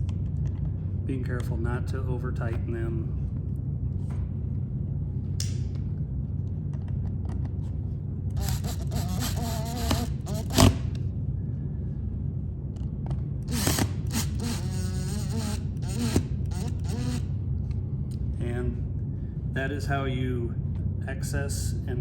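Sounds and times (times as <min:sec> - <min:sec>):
cordless drill driving screws: 0:08.4 - 0:10.9, 0:13.5 - 0:17.2.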